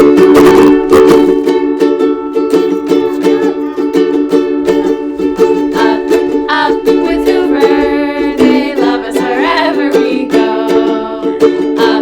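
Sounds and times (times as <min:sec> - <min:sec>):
strummed string instrument chords: 0:00.0 - 0:12.0.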